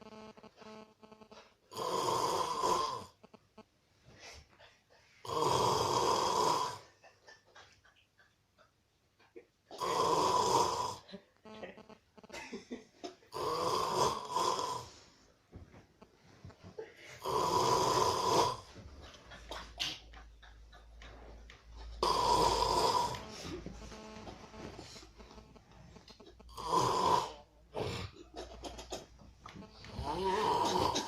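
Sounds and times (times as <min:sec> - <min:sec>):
loud snoring: 0:00.0 - 0:03.2, 0:05.2 - 0:06.9, 0:09.8 - 0:11.9, 0:13.3 - 0:15.0, 0:17.2 - 0:18.7, 0:22.0 - 0:28.2, 0:29.6 - 0:31.0
quiet breathing: 0:14.8 - 0:17.3.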